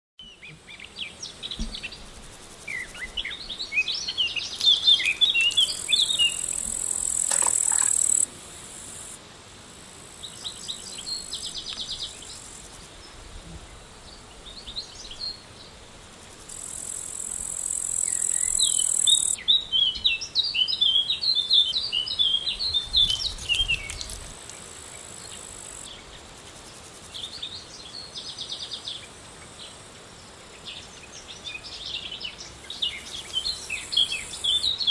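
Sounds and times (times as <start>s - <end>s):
high insect buzz: 0.3s - 34.9s
birds chirping: 2.7s - 8.3s, 18.0s - 20.6s, 21.2s - 24.3s.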